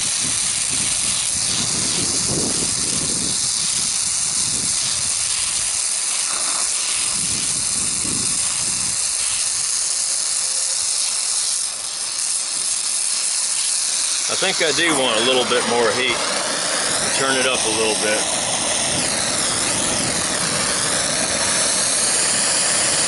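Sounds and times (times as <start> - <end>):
welding torch flame hissing: 0.0 - 23.0.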